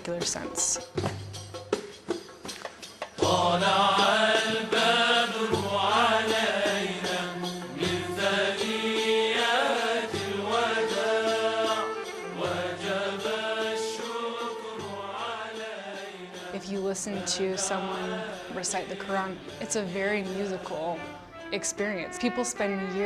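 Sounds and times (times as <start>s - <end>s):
person chanting: 16.5s - 21.2s.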